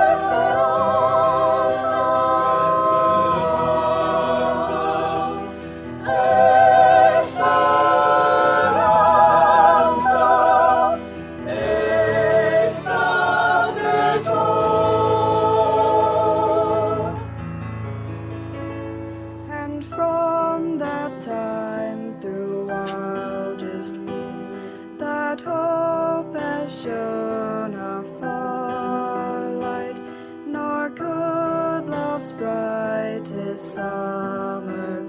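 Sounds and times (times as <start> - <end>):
mixed choir singing: 0.0 - 17.4.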